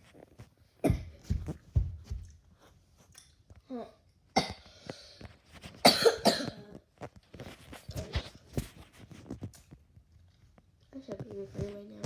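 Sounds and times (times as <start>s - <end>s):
cat hacking cough: 5.8s - 6.5s.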